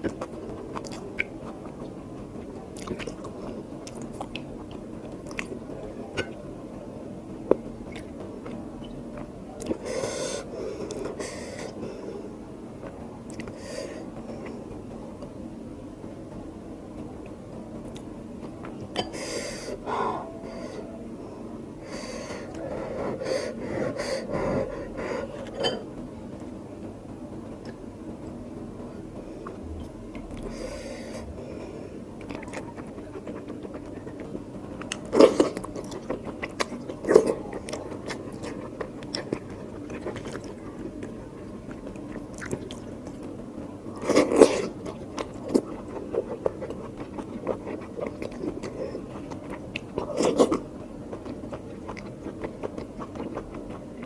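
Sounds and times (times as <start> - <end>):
close chewing mouth sounds: 0.0 - 5.6, 12.8 - 14.7, 32.2 - 54.0.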